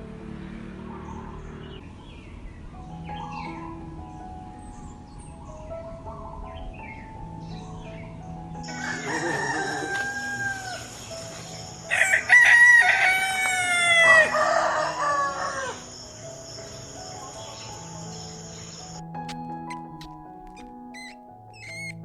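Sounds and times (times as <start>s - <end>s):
soft piano music: 0.0s - 22.0s
rooster crowing: 8.7s - 11.0s, 11.9s - 15.8s.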